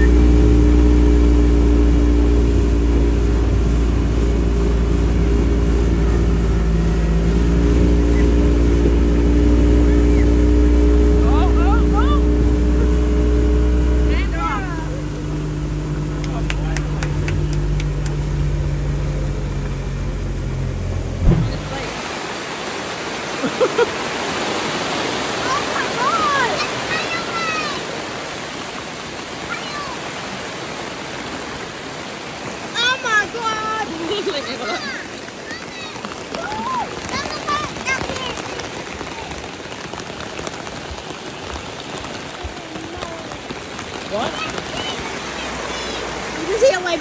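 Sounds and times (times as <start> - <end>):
engine running: 0.0 - 22.8
heavy rain hiss: 0.0 - 47.0
thump: 21.2 - 21.7.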